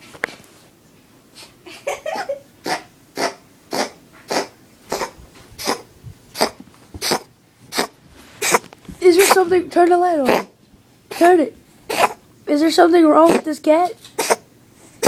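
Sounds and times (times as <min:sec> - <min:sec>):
cat coughing: 0:02.1 - 0:08.6, 0:09.2 - 0:09.5, 0:11.1 - 0:12.2, 0:14.2 - 0:14.5.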